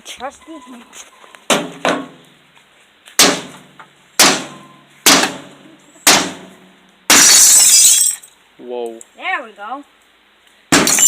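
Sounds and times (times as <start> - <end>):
glass shattering: 7.1 - 8.4, 10.7 - 11.0.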